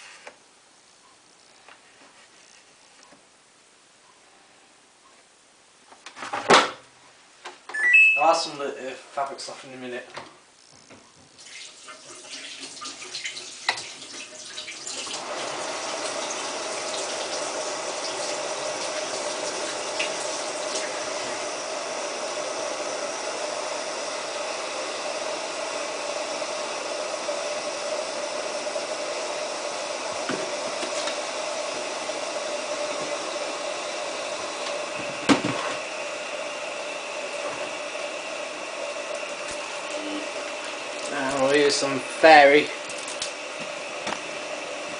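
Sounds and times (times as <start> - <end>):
water rushing into washing machine: 11.4 - 44.9.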